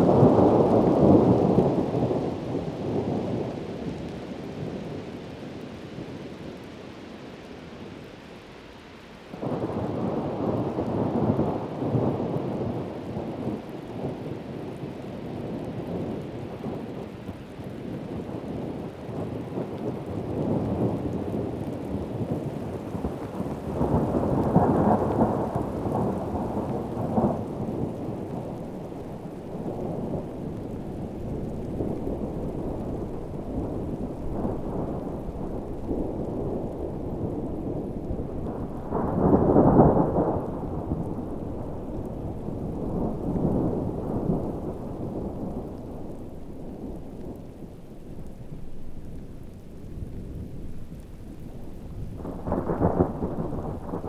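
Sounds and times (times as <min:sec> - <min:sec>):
heavy rain: 0:00.0 - 0:54.0
rolling thunder: 0:18.1 - 0:54.0.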